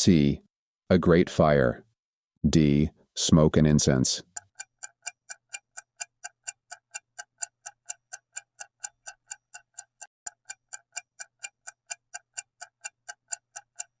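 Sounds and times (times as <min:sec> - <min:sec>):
clock-like ticking: 0:03.6 - 0:14.0.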